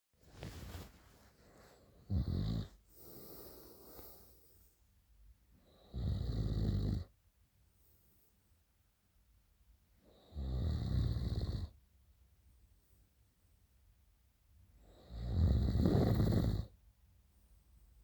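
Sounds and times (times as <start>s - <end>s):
soft breath: 0.2s - 5.0s
person snoring loudly: 2.1s - 3.7s, 5.9s - 7.1s, 15.1s - 16.7s.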